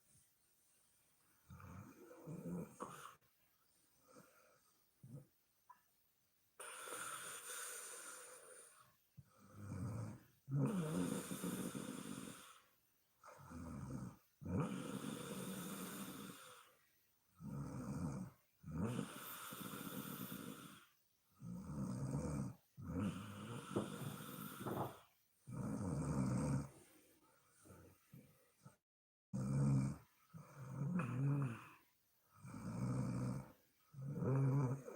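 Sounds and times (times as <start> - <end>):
woman snoring: 1.5 - 3.2, 6.6 - 8.8, 9.4 - 12.7, 13.3 - 16.7, 17.4 - 26.8, 29.4 - 31.8, 32.4 - 34.9.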